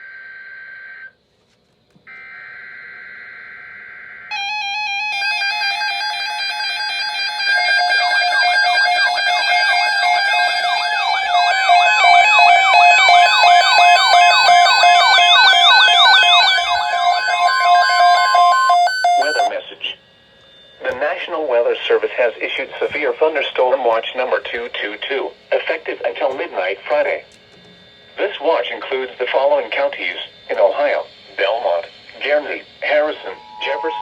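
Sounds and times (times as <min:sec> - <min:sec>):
warbling siren sweeps: 0:02.8 - 0:19.6, 0:32.8 - 0:34.0
buzzy digital data bursts: 0:07.0 - 0:19.5, 0:30.7 - 0:34.0
steady alert tone: 0:07.7 - 0:19.6, 0:32.8 - 0:34.0.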